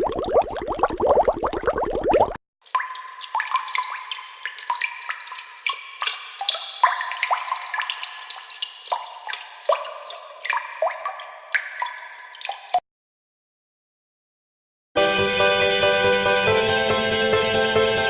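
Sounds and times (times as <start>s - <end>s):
water drops plinking: 0.0s - 12.8s.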